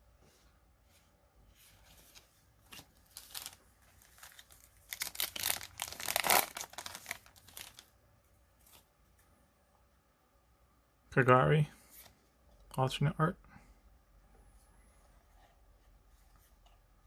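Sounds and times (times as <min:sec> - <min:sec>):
foil wrapper crinkling and tearing: 0:03.1 - 0:07.9.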